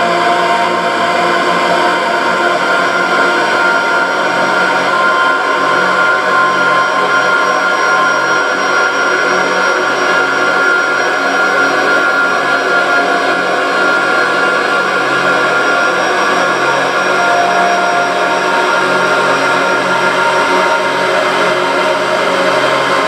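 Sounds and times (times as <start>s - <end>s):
held drone tones: 11.0s - 23.0s.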